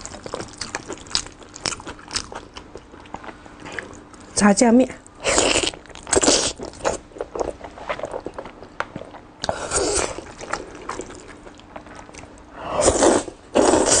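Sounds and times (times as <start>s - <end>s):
wet chewing and mouth clicks: 0.0s - 4.3s, 5.4s - 12.5s
noodle slurping: 12.8s - 14.0s.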